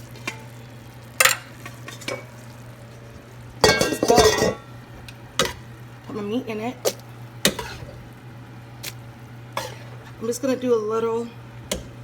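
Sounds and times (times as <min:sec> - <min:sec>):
steady low hum: 0:00.0 - 0:12.0
utensils clattering and scraping: 0:03.6 - 0:04.6
dishes clinking: 0:03.6 - 0:04.7.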